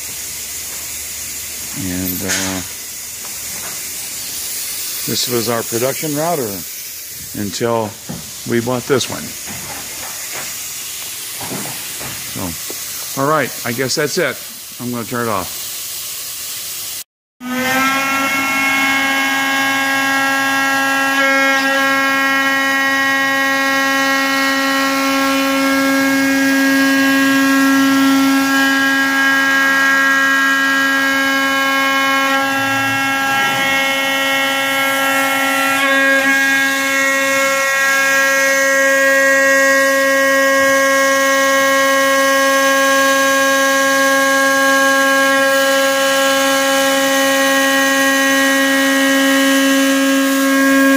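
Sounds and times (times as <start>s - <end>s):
router spindle high-pitched whine: 5.0s - 6.6s, 17.4s - 50.9s.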